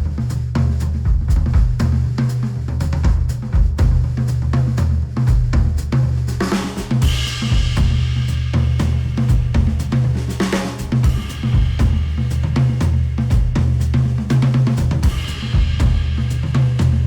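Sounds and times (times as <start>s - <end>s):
drum-driven music through headphones: 6.6s - 17.0s.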